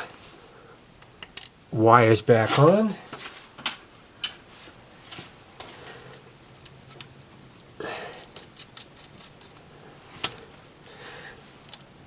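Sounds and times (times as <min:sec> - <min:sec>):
small metal parts clicking: 0:01.0 - 0:01.6, 0:08.1 - 0:09.5
soft rustle: 0:02.5 - 0:03.6, 0:04.4 - 0:06.0.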